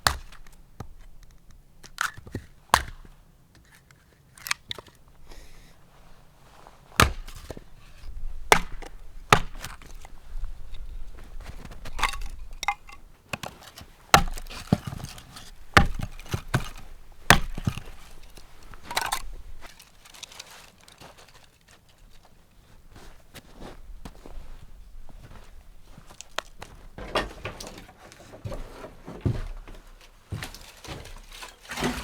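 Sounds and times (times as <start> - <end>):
axe chopping firewood: 0.0 - 3.2, 6.9 - 19.7
wood knocks and scrapes: 6.6 - 21.4, 26.1 - 32.0.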